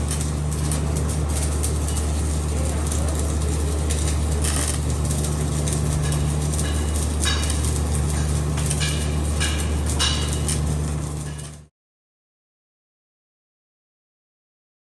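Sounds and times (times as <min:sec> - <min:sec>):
machine humming: 0:00.0 - 0:11.7.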